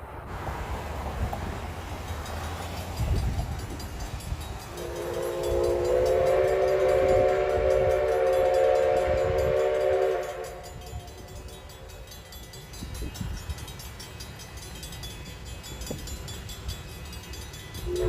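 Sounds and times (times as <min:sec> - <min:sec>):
passing train rumble: 0:00.0 - 0:18.0
steam locomotive whistle: 0:04.7 - 0:11.6, 0:17.8 - 0:18.0.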